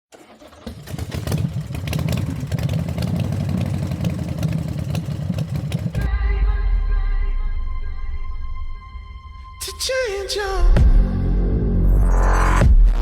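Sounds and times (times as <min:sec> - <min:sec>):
motorcycle engine running: 0:00.3 - 0:06.1.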